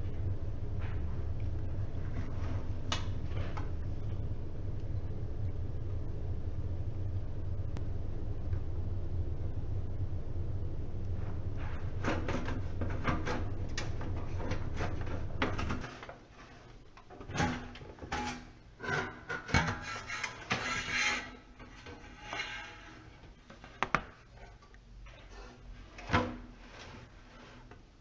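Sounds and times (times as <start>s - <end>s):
low steady rumble: 0.0s - 17.8s.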